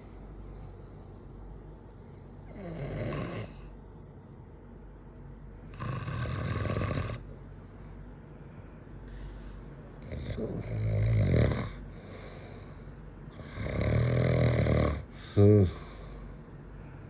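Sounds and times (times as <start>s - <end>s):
soft breathing: 0.0s - 2.6s, 7.2s - 10.6s, 11.8s - 13.2s, 15.1s - 17.0s
man snoring: 2.5s - 3.7s, 5.7s - 7.2s, 10.0s - 12.6s, 13.3s - 16.0s.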